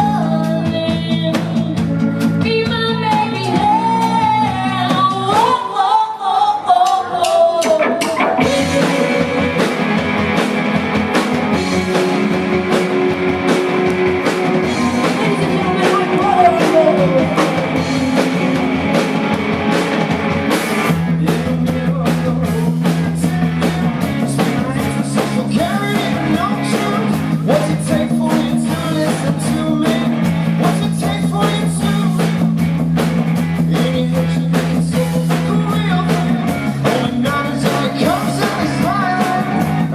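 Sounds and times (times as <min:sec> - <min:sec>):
person singing: 0:00.0 - 0:10.3, 0:14.5 - 0:18.5, 0:21.1 - 0:32.3, 0:33.7 - 0:39.9
drums and bass beat: 0:00.0 - 0:39.9
live rock band playing: 0:00.0 - 0:39.9.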